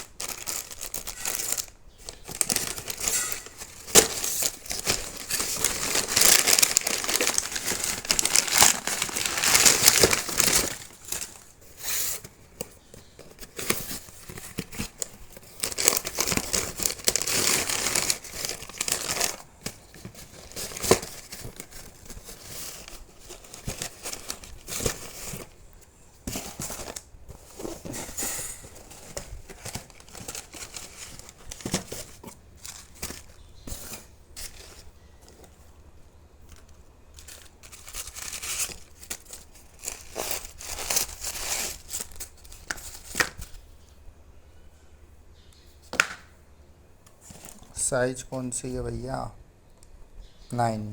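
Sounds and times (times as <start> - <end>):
packaging crinkling and tearing: 0.0 - 35.6, 36.4 - 43.6
packaging rustling: 0.0 - 35.8, 36.4 - 43.7.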